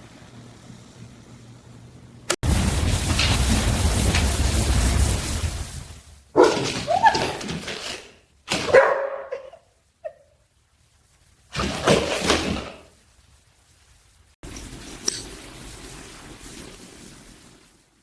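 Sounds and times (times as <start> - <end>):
hiss of noise: 0.0 - 6.4, 12.8 - 18.0
dog barking and whining: 6.4 - 7.6, 8.6 - 10.3.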